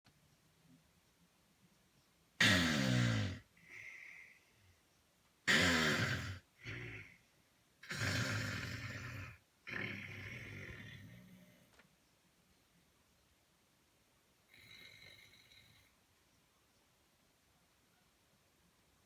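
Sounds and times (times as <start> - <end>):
woman snoring: 2.4 - 3.4, 5.5 - 7.1, 7.8 - 11.6, 14.5 - 16.0.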